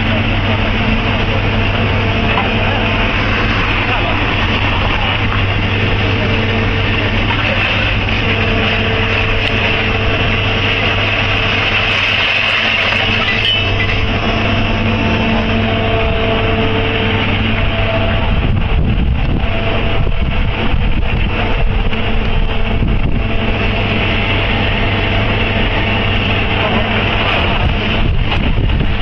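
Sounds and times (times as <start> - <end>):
construction machine engine droning: 0.0 - 29.0.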